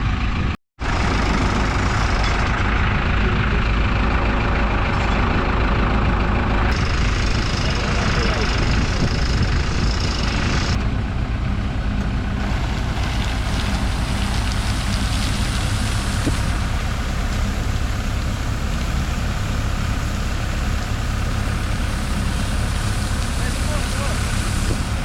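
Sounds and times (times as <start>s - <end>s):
engine running steadily: 0.0s - 25.0s
rushing hiss: 12.4s - 16.7s, 21.2s - 25.0s.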